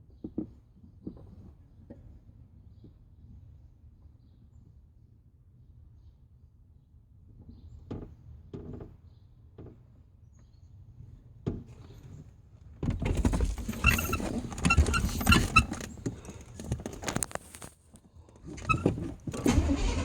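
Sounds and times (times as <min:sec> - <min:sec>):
truck engine cranking: 0:12.9 - 0:17.7, 0:18.3 - 0:20.0.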